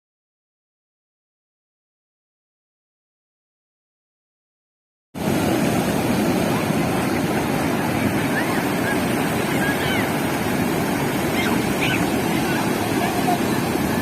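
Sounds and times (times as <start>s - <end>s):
sea surf washing: 5.2s - 14.0s
wind on microphone: 5.2s - 14.0s.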